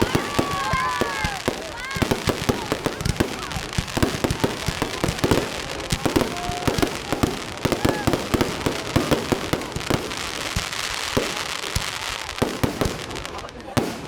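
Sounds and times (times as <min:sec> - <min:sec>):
fireworks bangs: 0:00.0 - 0:14.0
fireworks crackling: 0:00.0 - 0:14.0.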